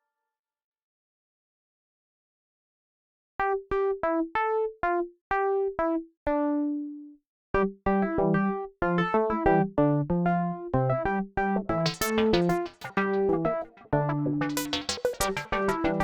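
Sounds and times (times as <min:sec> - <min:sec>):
synth plucked melody: 0:07.9 - 0:16.0.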